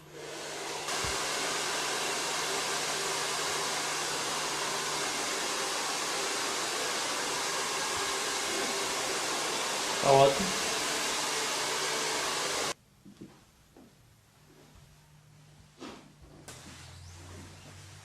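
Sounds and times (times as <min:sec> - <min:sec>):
hair dryer blowing air: 0:00.0 - 0:12.8.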